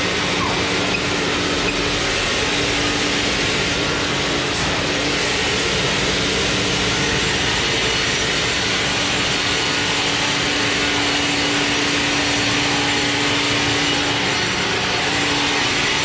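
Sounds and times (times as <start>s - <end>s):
sawmill machinery running: 0.0s - 16.0s
steady hum: 0.0s - 16.0s.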